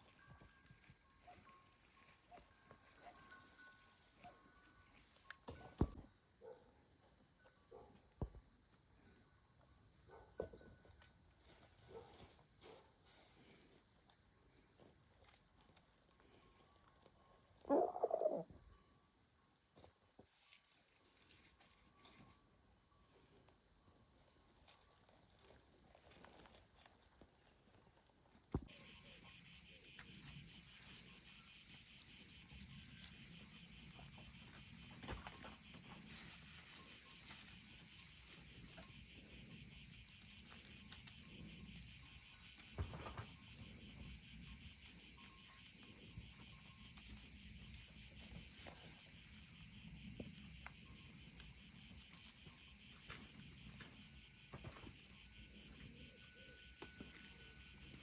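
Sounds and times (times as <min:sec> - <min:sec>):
crickets chirping: 0:00.0 - 0:06.0, 0:11.4 - 0:19.0, 0:28.6 - 0:58.0.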